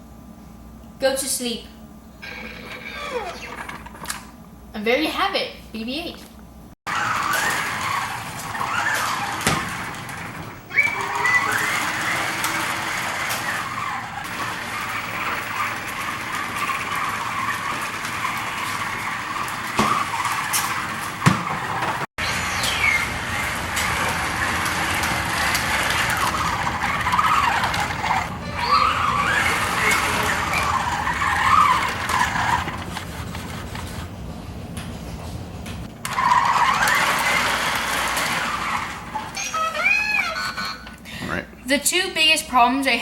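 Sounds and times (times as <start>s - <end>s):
toy drive motors whirring: 2.2s - 4.2s, 6.9s - 21.2s, 22.4s - 33.1s, 36.0s - 40.8s.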